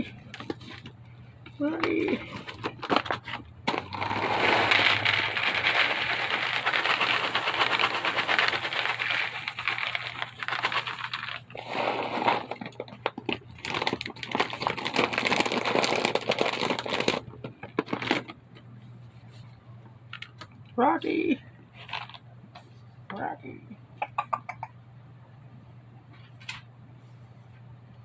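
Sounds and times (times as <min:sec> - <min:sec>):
dry kibble pouring from a bag: 0:02.0 - 0:18.3.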